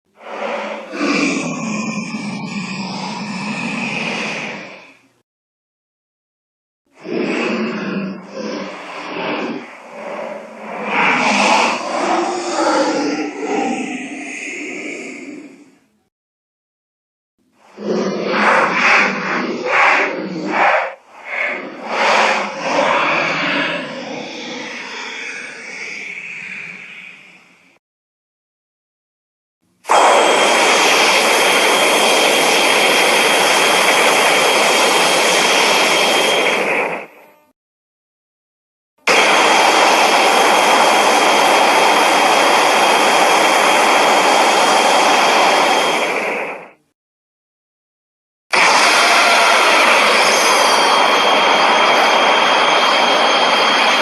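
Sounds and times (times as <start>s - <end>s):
loud monster roar bursts: 0.2s - 5.0s, 7.0s - 15.8s, 17.7s - 27.4s, 29.9s - 37.1s, 39.1s - 46.8s, 48.5s - 54.0s
long rushing sound with high tone: 7.0s - 14.5s, 17.5s - 27.8s, 29.9s - 37.2s, 39.1s - 46.8s, 48.6s - 54.0s.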